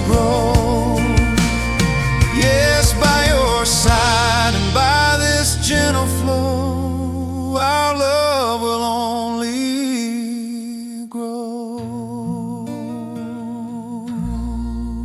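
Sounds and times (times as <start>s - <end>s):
soft backing music: 0.0s - 7.2s
person singing ballad: 0.0s - 15.0s.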